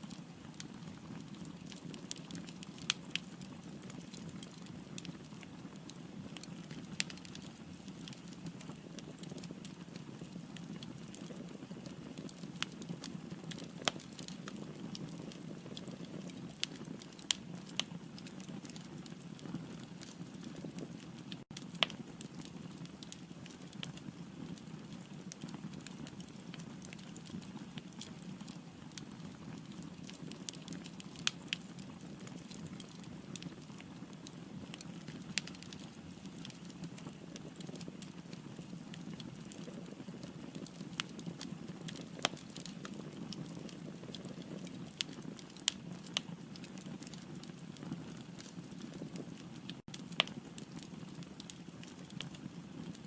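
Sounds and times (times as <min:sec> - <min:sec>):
firewood crackling and popping: 0:00.0 - 0:53.0.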